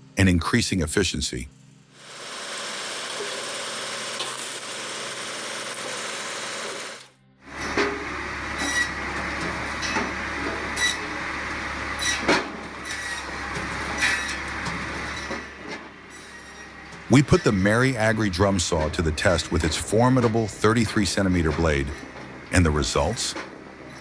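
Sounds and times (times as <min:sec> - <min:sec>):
machine knocking sharply: 0:02.0 - 0:07.1
machinery running: 0:02.0 - 0:12.0.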